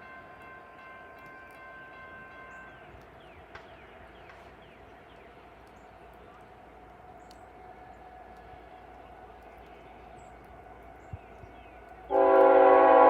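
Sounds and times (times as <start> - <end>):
low rumble of train: 0.0 - 13.0
distant locomotive air horn: 12.1 - 13.0.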